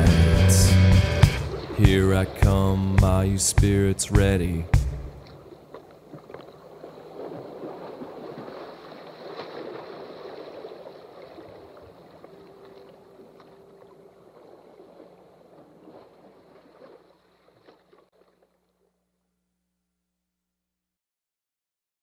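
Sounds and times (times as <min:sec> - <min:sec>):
water lapping and sloshing: 0:01.1 - 0:19.0
small water splashes: 0:01.3 - 0:18.9.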